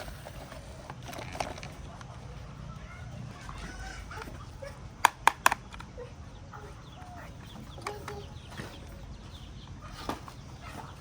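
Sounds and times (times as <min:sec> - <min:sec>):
chickens clucking: 0:01.7 - 0:11.0.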